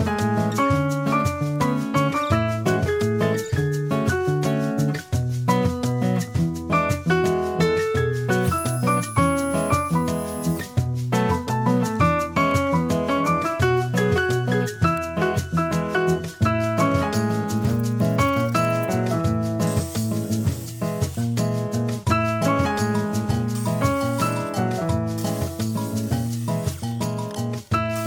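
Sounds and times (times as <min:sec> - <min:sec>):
plucked melody with bass and drums: 0:17.1 - 0:28.0
steady bass line: 0:17.4 - 0:21.8
plucked guitar-like melody: 0:22.6 - 0:28.0.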